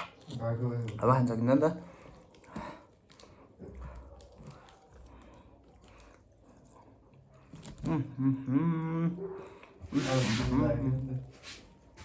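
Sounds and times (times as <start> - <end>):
faint chewing and biting: 0.0 - 8.3.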